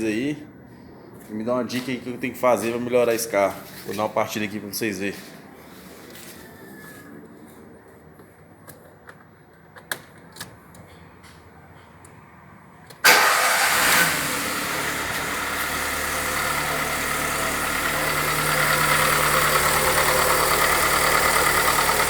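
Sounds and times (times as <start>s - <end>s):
car engine starting and idling: 12.9s - 22.0s.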